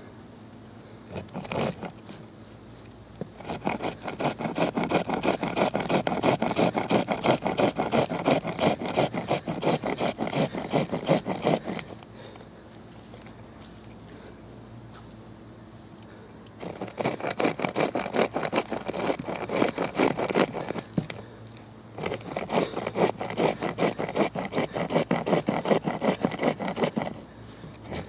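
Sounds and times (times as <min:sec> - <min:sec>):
chain saw rasping through wood: 0:01.0 - 0:02.3, 0:03.2 - 0:12.4, 0:16.0 - 0:28.0.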